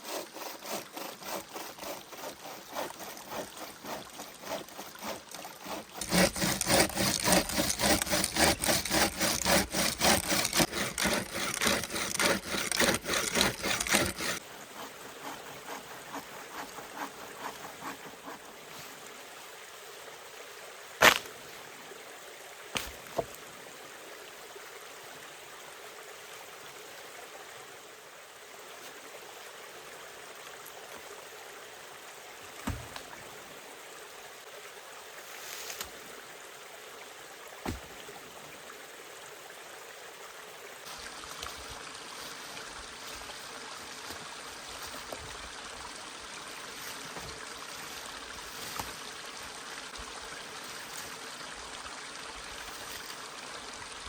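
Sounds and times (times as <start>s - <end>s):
hand saw cutting wood: 0.0s - 18.7s
stream running: 0.0s - 54.0s.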